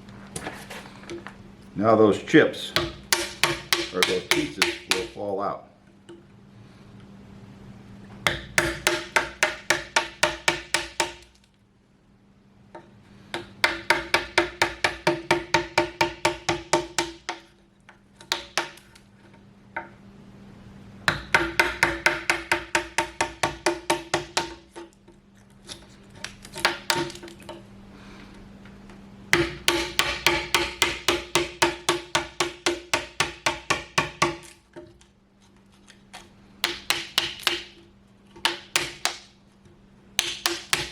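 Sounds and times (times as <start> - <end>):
faint steady hum: 0.0 - 40.9
hammer blows on timber: 2.7 - 5.2.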